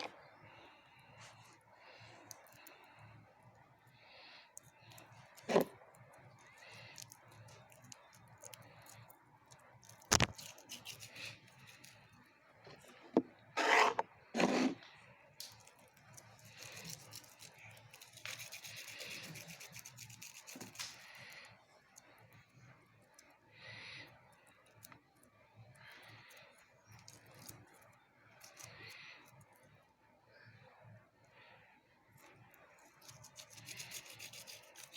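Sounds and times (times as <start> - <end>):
rubbing and scraping: 5.4 - 5.7, 13.6 - 14.8.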